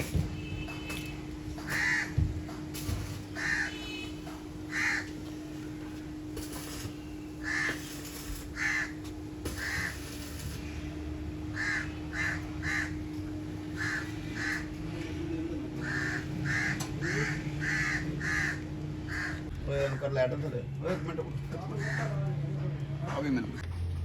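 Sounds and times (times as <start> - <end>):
steady low hum: 0.0 - 24.0
crows cawing: 1.6 - 4.0, 4.6 - 5.3, 7.4 - 10.2, 11.5 - 14.8, 15.8 - 20.2, 21.8 - 22.2.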